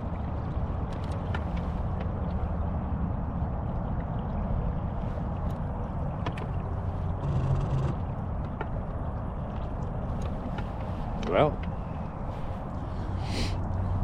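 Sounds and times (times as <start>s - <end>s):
water noise: 0.0s - 14.0s
electric boat motor humming: 7.1s - 8.2s.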